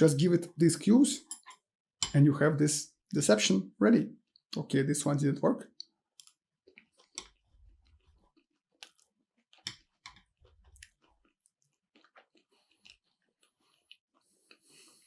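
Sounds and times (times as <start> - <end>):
close-up chewing: 5.8 - 15.0.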